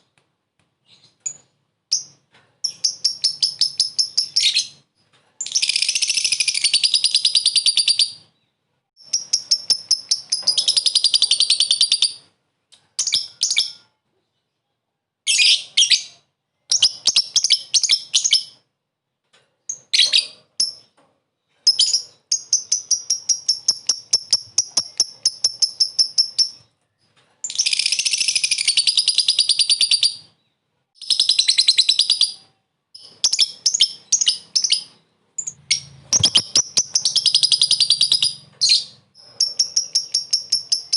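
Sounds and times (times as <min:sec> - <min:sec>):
lovebird chattering: 0:33.0 - 0:40.9.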